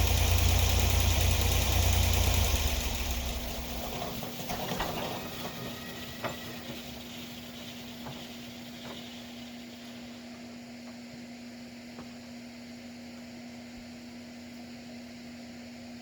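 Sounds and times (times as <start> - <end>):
sawmill engine: 0.0 - 10.3
steady hum: 0.0 - 12.1.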